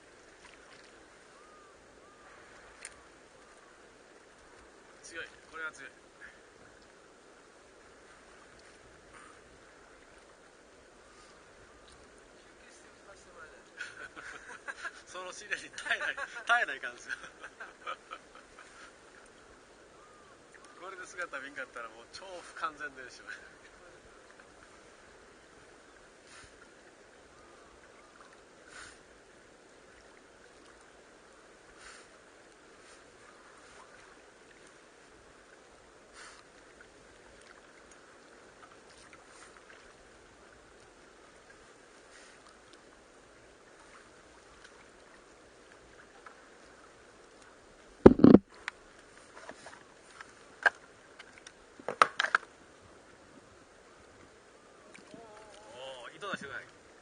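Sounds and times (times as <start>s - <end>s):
water lapping against boat hull: 0.0s - 7.0s, 31.6s - 52.6s, 54.7s - 57.0s
knocks on wooden boat: 48.1s - 48.4s.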